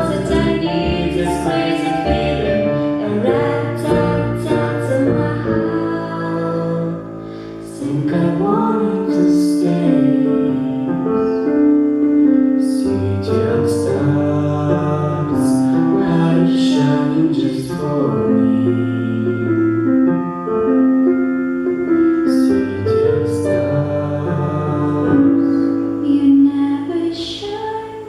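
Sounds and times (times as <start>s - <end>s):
piano accompaniment: 0.0s - 28.0s
woman singing a slow ballad: 25.6s - 28.0s.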